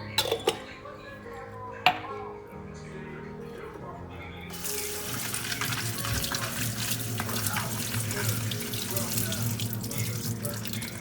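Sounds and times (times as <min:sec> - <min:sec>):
water running in a stream: 0:04.5 - 0:11.0.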